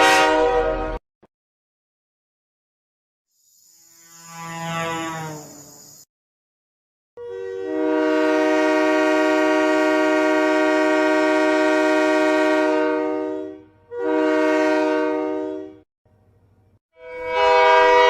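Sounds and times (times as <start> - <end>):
locomotive air horn: 0.0 - 1.0, 7.2 - 15.8, 17.0 - 18.0.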